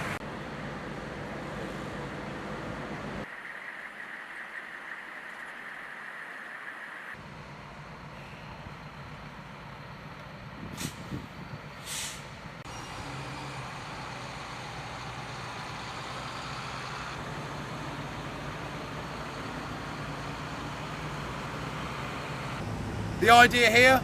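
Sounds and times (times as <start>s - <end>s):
heavy truck engines running: 0.0s - 3.7s, 7.2s - 24.0s
air brake hisses: 10.7s - 11.2s, 11.8s - 12.4s.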